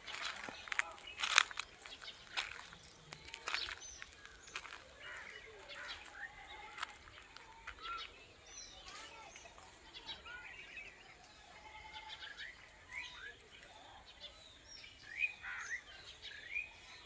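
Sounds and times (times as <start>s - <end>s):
birds chirping and calling: 0.0s - 17.0s.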